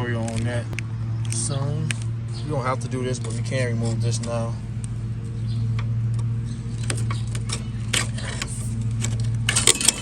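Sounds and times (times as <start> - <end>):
low mechanical hum: 0.0 - 10.0
metal parts clicking and clinking: 6.8 - 10.0.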